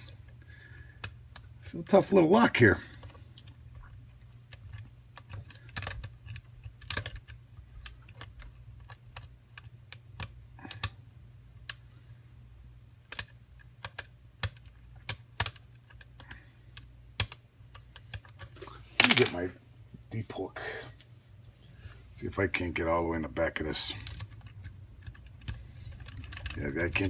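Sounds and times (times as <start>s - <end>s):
lock pick clicking and scraping: 3.0s - 10.9s, 13.0s - 18.6s, 24.0s - 26.6s.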